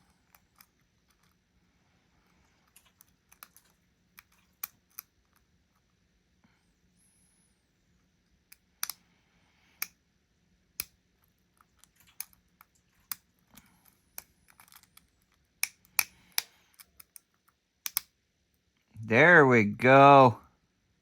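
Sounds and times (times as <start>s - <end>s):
lock pick metal clicks: 17.9s - 18.1s.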